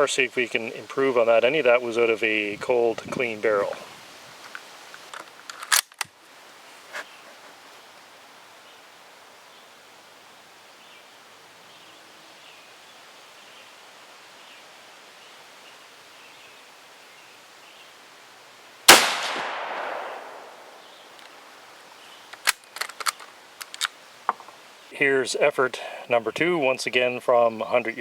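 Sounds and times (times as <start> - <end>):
faint outdoor background: 0.0 - 28.0
rifle shot ringing out: 18.9 - 20.8.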